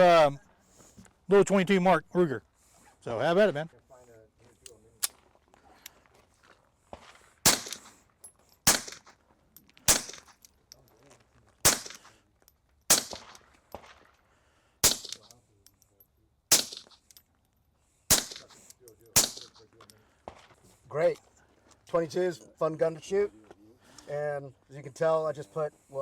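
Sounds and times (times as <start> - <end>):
suppressed gunshots: 7.4 - 8.0, 8.6 - 9.1, 9.9 - 10.3, 11.6 - 12.1, 12.9 - 14.0, 14.8 - 15.2, 16.5 - 17.0, 18.1 - 18.6, 19.2 - 19.6.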